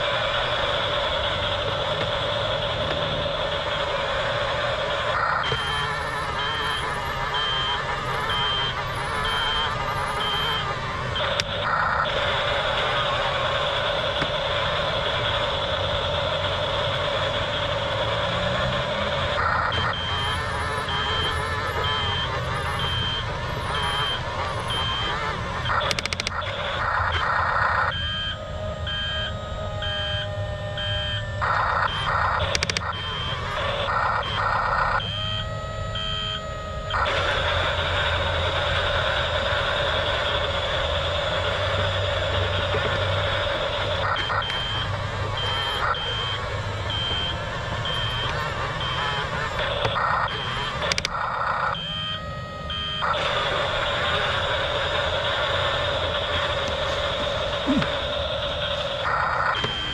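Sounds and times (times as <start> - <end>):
toy diesel engine sound effect: 0.0 - 59.9
reversing beep effect: 0.1 - 59.9
held electronic tone: 4.9 - 39.0, 39.6 - 59.9
low motor hum: 35.0 - 59.9.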